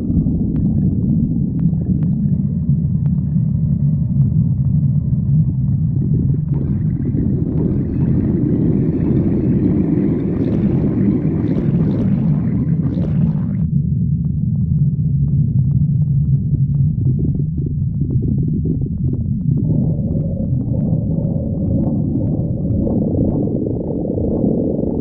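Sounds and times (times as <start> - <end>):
stomach rumbling low: 0.0 - 25.0
higher rough stomach growl: 5.7 - 13.7.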